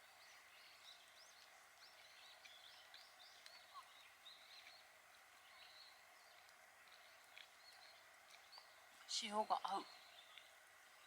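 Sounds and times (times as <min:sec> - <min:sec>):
faint bird chirps: 0:00.0 - 0:11.0
faint clicks: 0:02.4 - 0:03.7, 0:06.3 - 0:08.7, 0:10.2 - 0:10.6.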